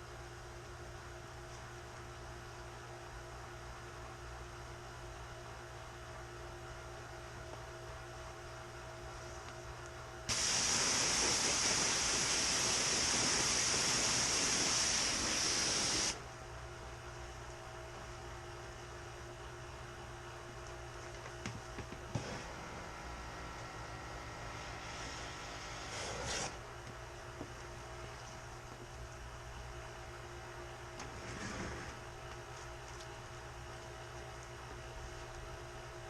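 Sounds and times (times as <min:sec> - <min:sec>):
low hum with tones: 0:00.0 - 0:36.0
pressurised spray hiss: 0:10.3 - 0:16.2.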